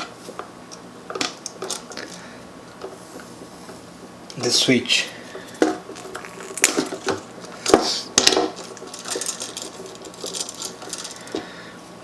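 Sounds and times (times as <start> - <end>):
electrical tape crackling: 5.4 - 11.6.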